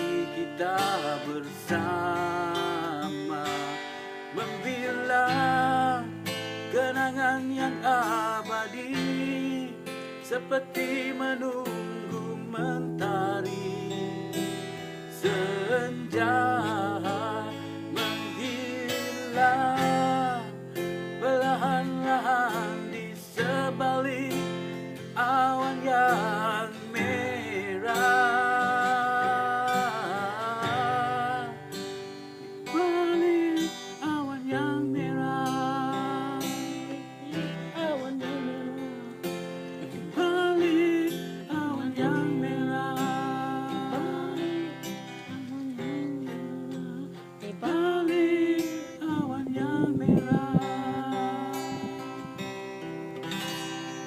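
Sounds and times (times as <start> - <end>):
acoustic guitar strumming chords: 0.0 - 54.0.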